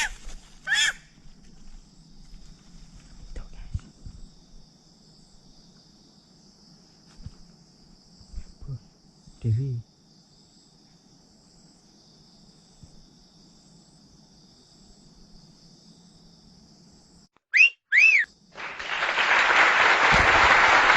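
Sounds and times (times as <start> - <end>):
insects droning: 0.0 - 20.9
loud rising and falling whistles: 17.5 - 20.9.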